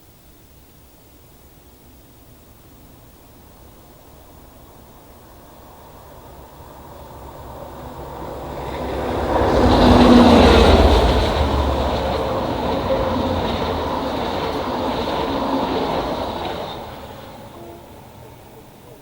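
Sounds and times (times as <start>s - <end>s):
diesel locomotive engine rumble: 3.4s - 19.0s
train wheels on rails: 4.1s - 19.0s.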